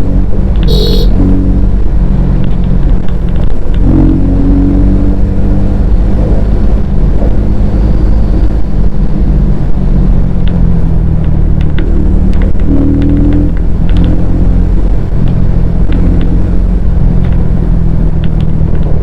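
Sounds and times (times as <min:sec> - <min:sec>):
motorcycle engine and exhaust running: 0:00.0 - 0:19.0.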